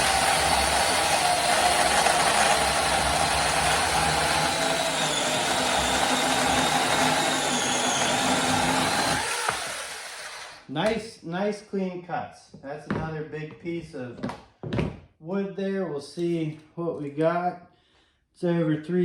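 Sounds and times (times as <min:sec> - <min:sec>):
chainsaw cutting wood: 0:00.0 - 0:10.7.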